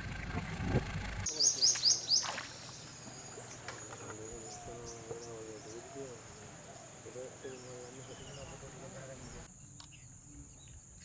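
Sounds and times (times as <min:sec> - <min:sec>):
low engine rumble: 0:00.0 - 0:09.5
bird calling high falling notes: 0:01.3 - 0:09.5
high insect drone: 0:01.3 - 0:11.0.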